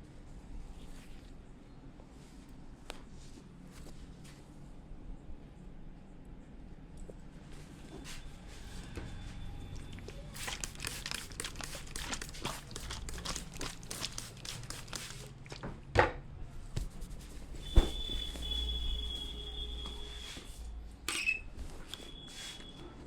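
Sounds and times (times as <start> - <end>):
hands rustling over hair: 10.4 - 15.6.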